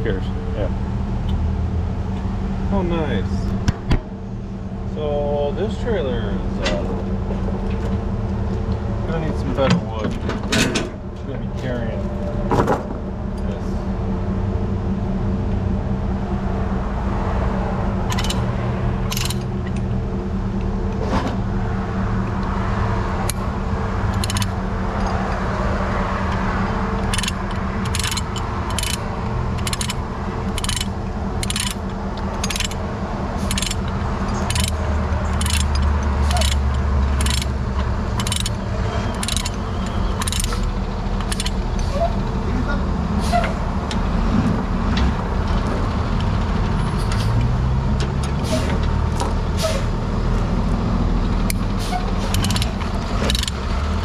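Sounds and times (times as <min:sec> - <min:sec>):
truck engine running: 0:00.0 - 0:54.0
regular clicking: 0:18.1 - 0:20.0, 0:24.1 - 0:24.6, 0:27.0 - 0:32.8, 0:33.4 - 0:41.8, 0:43.8 - 0:54.0.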